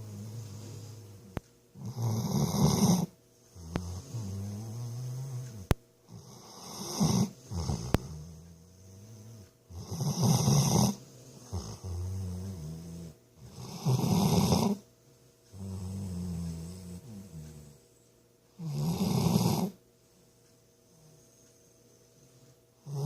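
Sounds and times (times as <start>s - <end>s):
person snoring: 0.0s - 14.8s, 15.5s - 17.8s.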